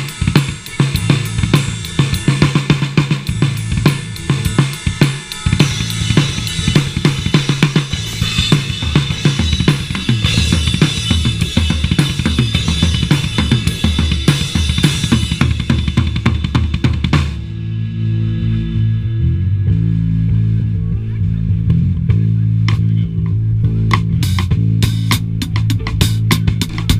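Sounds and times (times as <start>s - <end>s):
drum kit beat: 0.0s - 18.0s, 19.7s - 26.9s
guitar notes ringing: 0.0s - 20.7s
low bass line: 0.0s - 26.9s.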